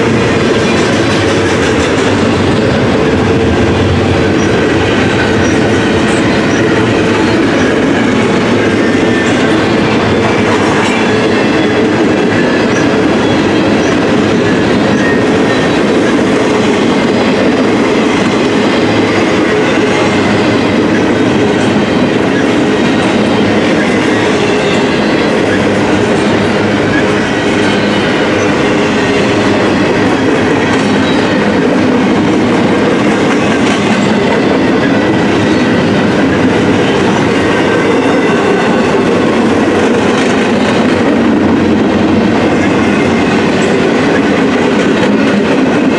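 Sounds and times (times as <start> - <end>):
train wheels rumbling on rails: 0.0 - 45.9.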